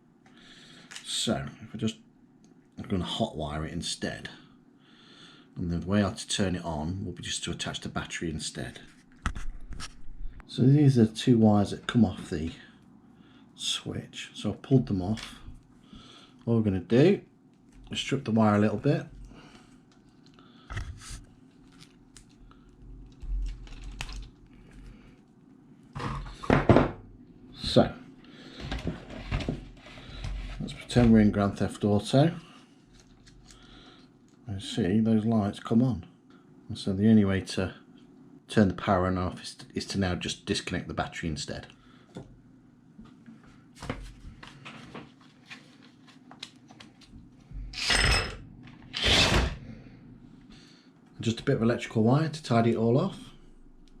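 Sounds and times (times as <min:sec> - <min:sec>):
clicks and knocks handling wiring: 0:23.0 - 0:24.8.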